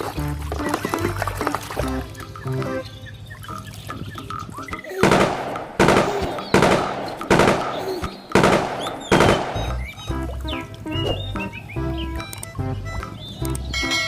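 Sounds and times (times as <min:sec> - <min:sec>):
loud gunshot-like bangs: 0:05.0 - 0:09.8.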